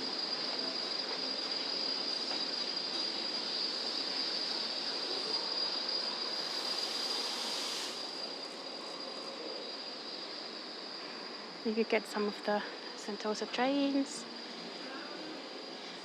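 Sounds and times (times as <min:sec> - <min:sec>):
rush of hissing: 0:00.0 - 0:11.6.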